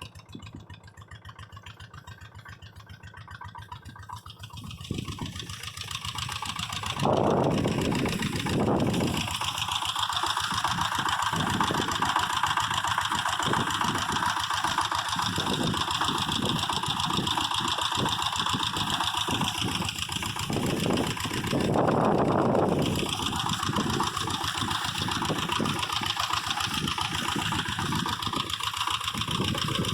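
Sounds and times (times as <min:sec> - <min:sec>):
engine-driven machine running: 0:00.0 - 0:29.9.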